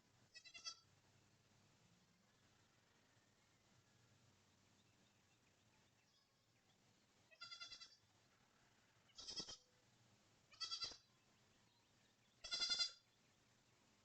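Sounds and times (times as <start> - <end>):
goat bleating: 0.3 - 0.9, 7.3 - 8.0, 9.1 - 9.7, 10.5 - 11.1, 12.4 - 13.0.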